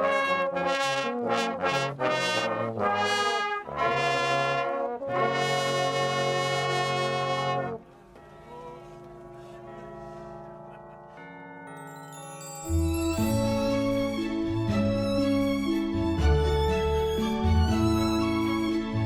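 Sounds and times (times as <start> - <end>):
brass band playing: 0.0 - 7.8, 13.2 - 19.0.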